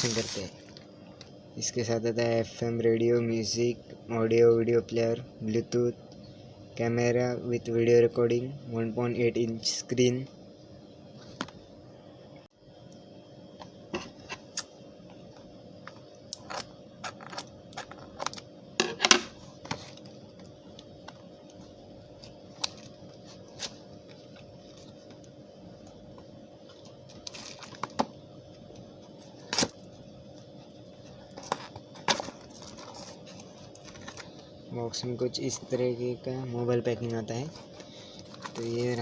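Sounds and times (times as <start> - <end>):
packaging rustling: 0.0 - 0.8, 37.6 - 39.0.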